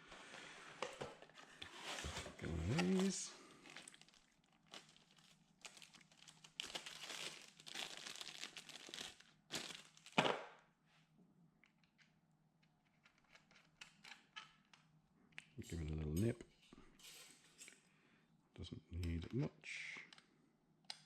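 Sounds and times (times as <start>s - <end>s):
plastic packaging crinkling and tearing: 1.6s - 10.4s.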